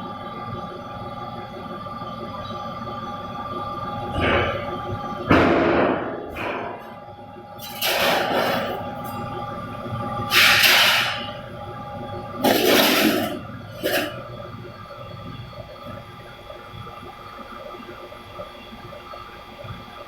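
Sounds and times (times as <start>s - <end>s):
press machine humming: 7.6s - 19.3s.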